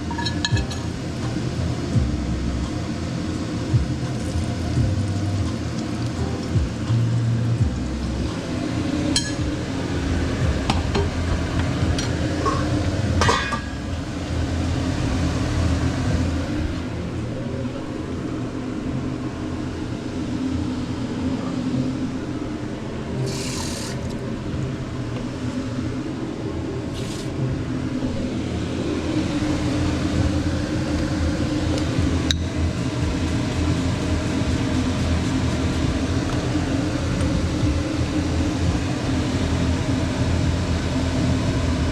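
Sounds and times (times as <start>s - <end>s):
low hum: 0.0s - 41.9s
utensils clinking on pan: 0.1s - 0.9s, 9.1s - 9.4s
steak frying hiss: 23.2s - 24.2s.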